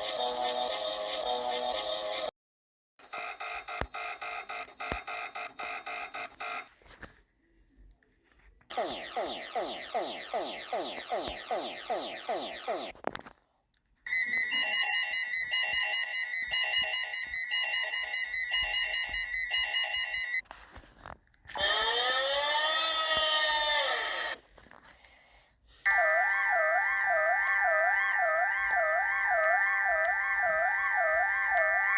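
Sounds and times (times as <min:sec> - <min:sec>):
steady alarm tone with beeps: 0:03.0 - 0:06.8, 0:08.7 - 0:12.9, 0:14.1 - 0:20.4
swooping alarm tone: 0:08.7 - 0:12.9, 0:14.1 - 0:20.4, 0:25.9 - 0:31.9
warbling alarm wail: 0:08.7 - 0:12.9, 0:14.1 - 0:20.4, 0:21.6 - 0:24.4, 0:25.9 - 0:31.9.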